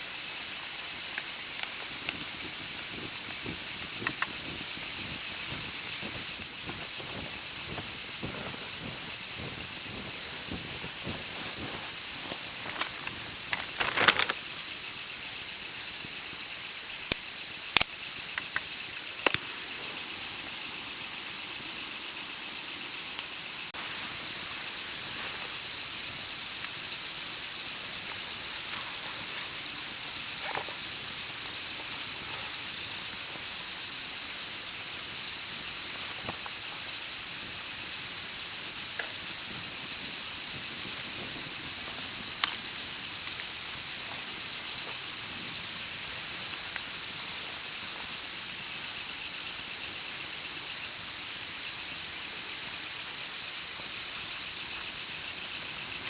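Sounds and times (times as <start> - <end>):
light hiss: 0.0 - 21.5
insect chorus droning: 0.0 - 56.0.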